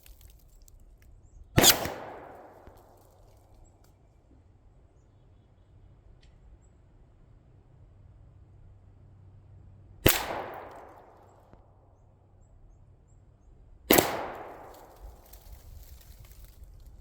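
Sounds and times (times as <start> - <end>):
gunshot echoing: 1.6 - 2.9, 10.0 - 11.3, 13.9 - 15.0.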